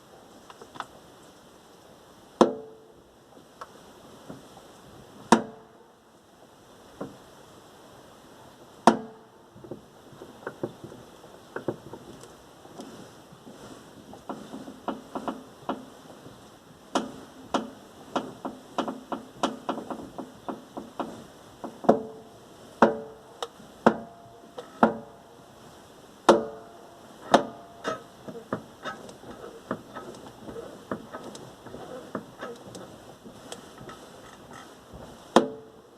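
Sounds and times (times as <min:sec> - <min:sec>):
metallic knocks and clanks: 0:23.8 - 0:25.1, 0:26.3 - 0:32.9.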